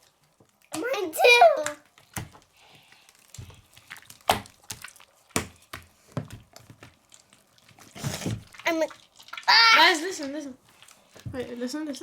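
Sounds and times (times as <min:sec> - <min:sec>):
slime squeezed with sticky pops: 0:03.2 - 0:09.6.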